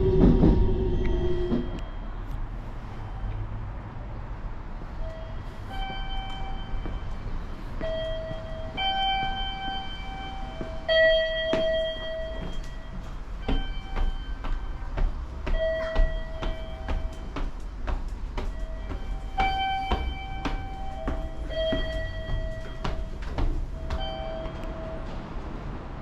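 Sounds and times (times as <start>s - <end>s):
train running rumble: 0.0s - 1.9s, 4.8s - 26.0s.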